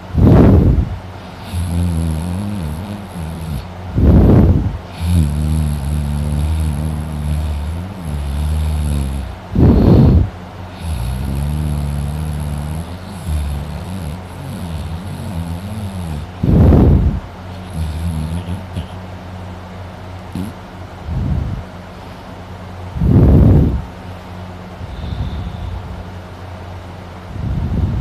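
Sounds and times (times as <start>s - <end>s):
man snoring loudly: 0.2s - 19.0s, 20.3s - 20.6s, 24.9s - 25.8s.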